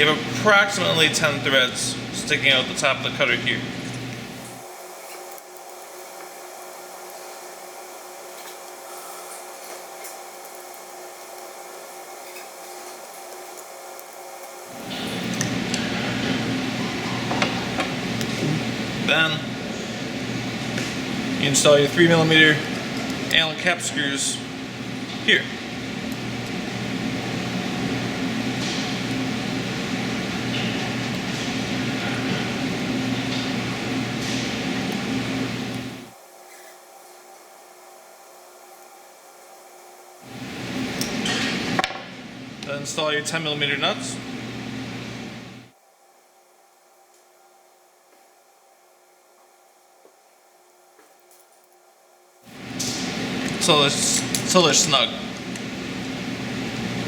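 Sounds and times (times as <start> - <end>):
faint hum: 13.9 - 36.6, 40.2 - 47.8.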